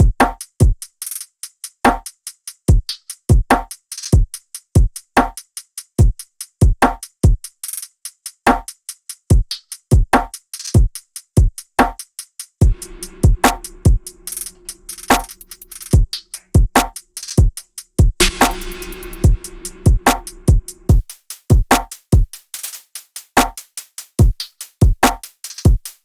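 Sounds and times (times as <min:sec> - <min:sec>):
drum machine beat: 0:12.6 - 0:16.9, 0:18.2 - 0:21.0.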